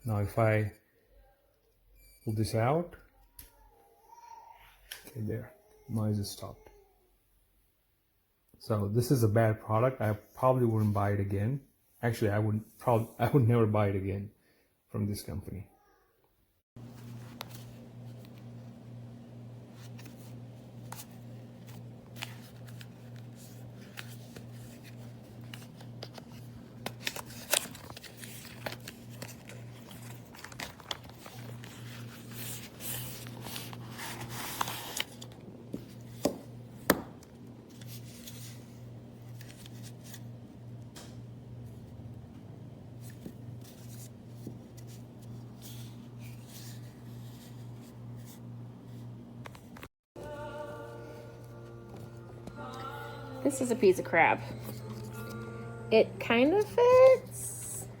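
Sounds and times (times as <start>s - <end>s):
steady low hum: 16.8s - 58.0s.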